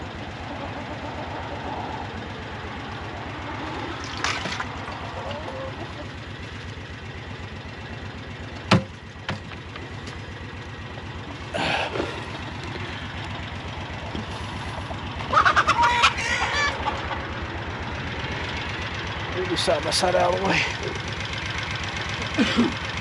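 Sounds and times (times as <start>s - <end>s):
chickens clucking: 0.0s - 6.2s, 11.9s - 17.5s
vehicle engine idling: 0.0s - 23.0s.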